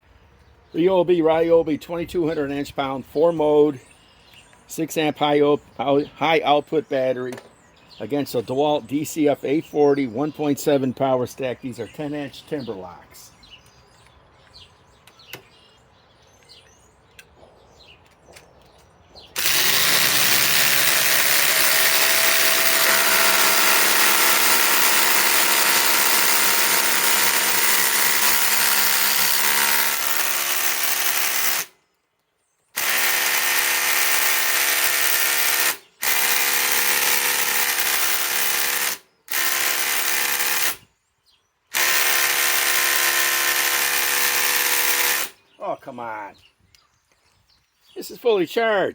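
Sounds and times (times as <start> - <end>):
impact driver driving screw into wood: 19.4 - 31.7, 32.8 - 40.8, 41.7 - 45.4.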